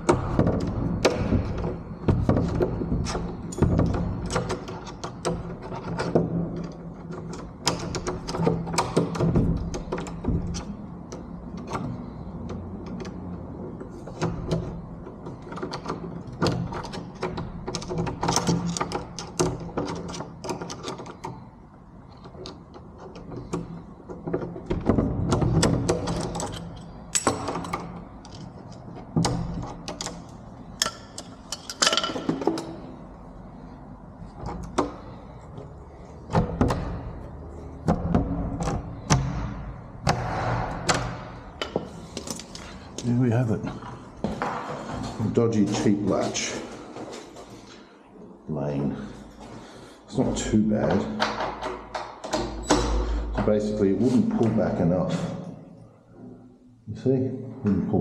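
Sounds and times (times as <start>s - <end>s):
metal clicks taps and knocks: 0.0s - 43.1s, 50.8s - 53.6s.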